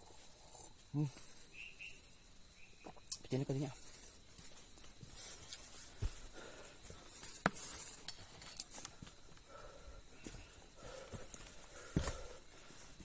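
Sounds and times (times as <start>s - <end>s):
footsteps on forest trail: 3.7s - 13.0s.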